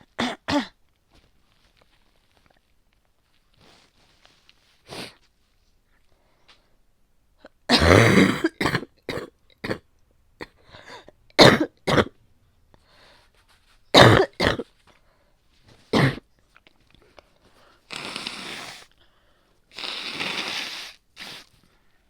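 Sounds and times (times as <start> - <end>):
wet phlegmy coughing: 0.0 - 0.8, 7.7 - 12.2, 14.0 - 14.7, 15.9 - 16.3.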